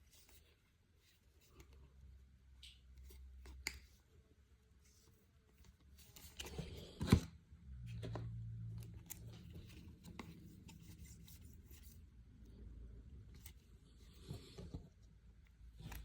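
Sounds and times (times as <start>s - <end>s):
cards being handled: 2.6s - 4.1s, 4.8s - 7.3s, 7.9s - 12.0s, 13.2s - 16.0s.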